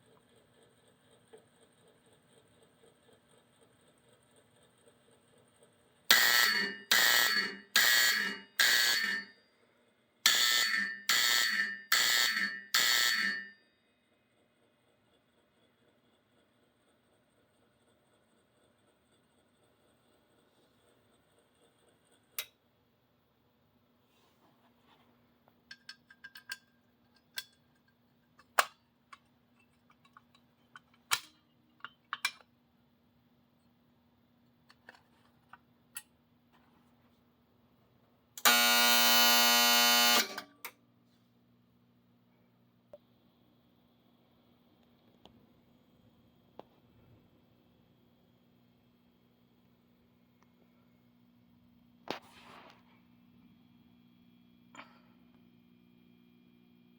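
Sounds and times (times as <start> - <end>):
low electrical hum: 0.0 - 56.9
coded fire alarm strokes: 6.1 - 9.4, 10.2 - 13.7, 38.4 - 40.4.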